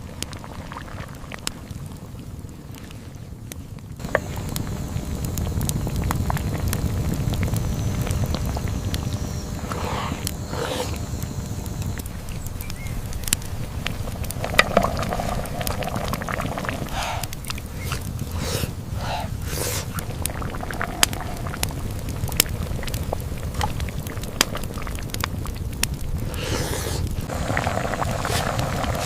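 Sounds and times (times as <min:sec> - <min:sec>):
wind rumbling on microphone: 0:00.0 - 0:29.0
sharp clicks and crackles: 0:02.8 - 0:18.8, 0:19.4 - 0:26.3.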